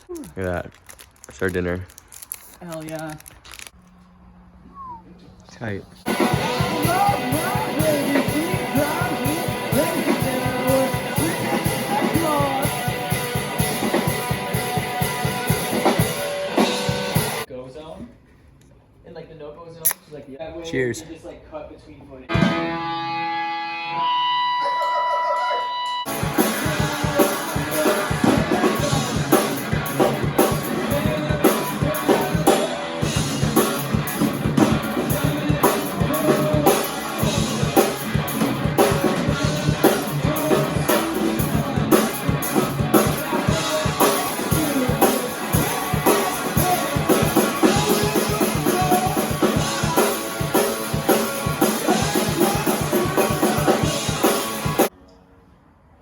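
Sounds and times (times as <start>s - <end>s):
rock music with drums and guitars: 6.0s - 17.5s, 22.3s - 25.0s, 25.9s - 54.9s.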